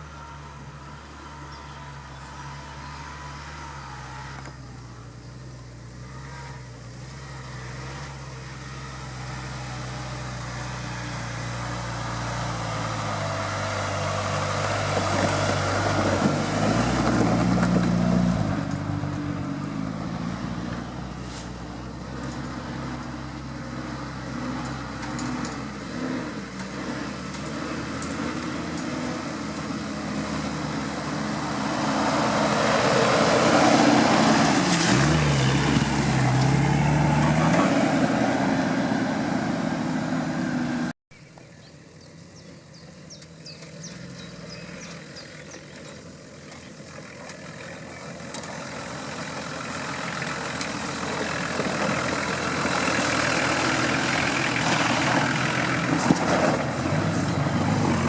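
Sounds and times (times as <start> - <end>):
vehicle engine under load: 0.0 - 58.0.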